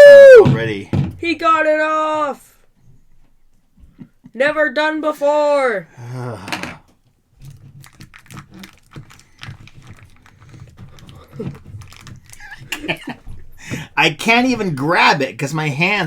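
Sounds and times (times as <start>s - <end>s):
plastic packaging crinkling: 7.4s - 13.2s.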